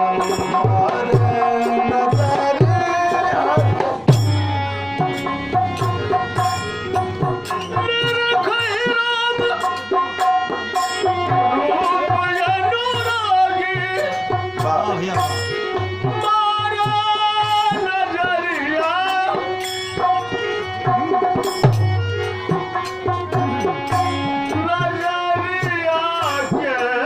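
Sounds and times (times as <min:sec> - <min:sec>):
sung verses: 0:00.0 - 0:27.0
tabla rhythm: 0:00.0 - 0:27.0
wavering melody line: 0:03.8 - 0:09.6.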